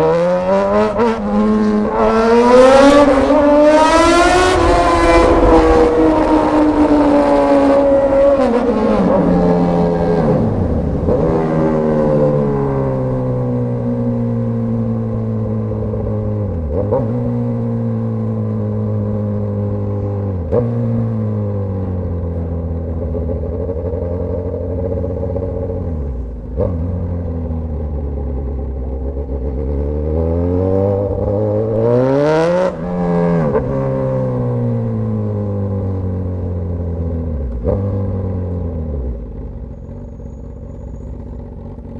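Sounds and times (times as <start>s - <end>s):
motorcycle exhaust revving: 0.0s - 41.9s.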